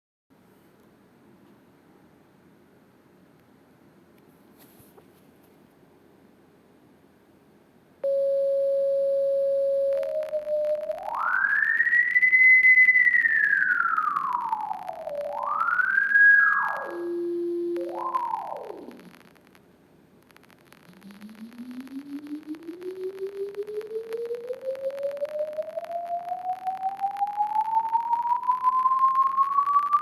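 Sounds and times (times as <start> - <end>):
sine tone sweeping in pitch: 8.0 - 19.2, 20.7 - 30.0
crackling digital clicks: 8.0 - 30.0.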